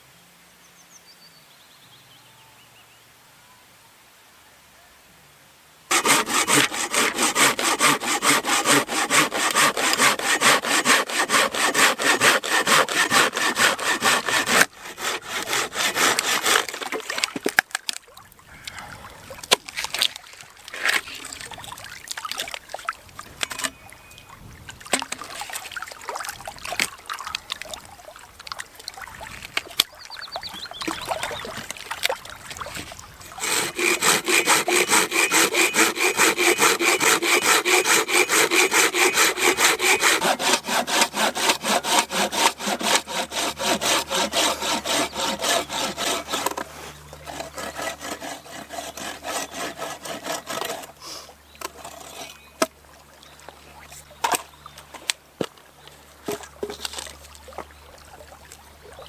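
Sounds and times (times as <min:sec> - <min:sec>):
hand saw cutting wood: 0:05.9 - 0:17.7, 0:32.7 - 0:52.7.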